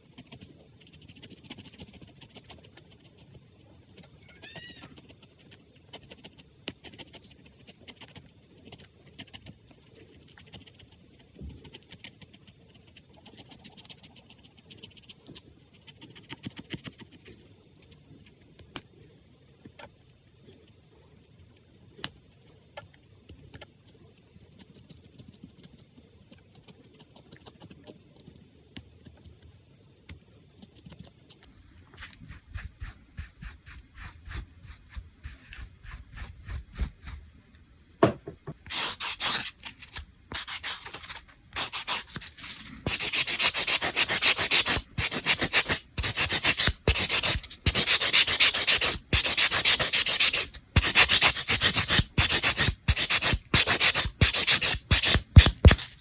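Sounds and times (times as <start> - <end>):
nail file rubbing: 31.9 - 37.2, 38.5 - 56.0.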